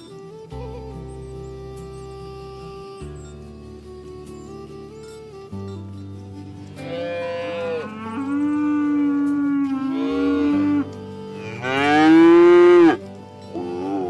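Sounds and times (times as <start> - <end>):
cattle mooing: 6.8 - 14.0.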